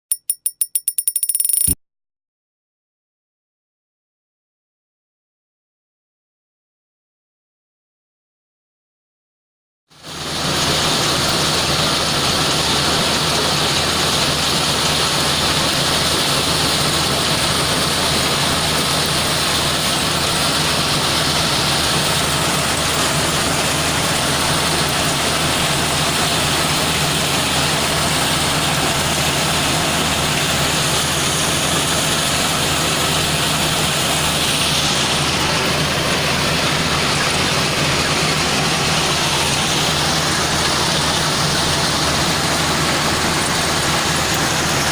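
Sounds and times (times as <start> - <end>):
loader diesel engine running: 10.0 - 44.9.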